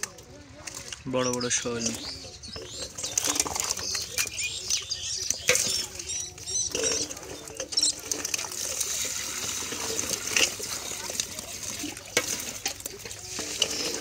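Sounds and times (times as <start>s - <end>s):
small birds chirping: 0.0s - 14.0s
fish flapping and slapping: 2.6s - 14.0s.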